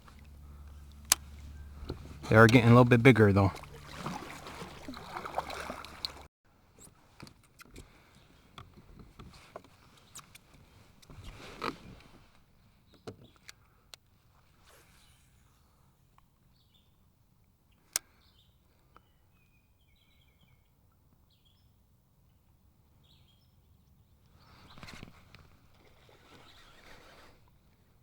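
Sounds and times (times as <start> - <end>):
rustle of handling or water: 0.0 - 12.6, 24.3 - 28.0.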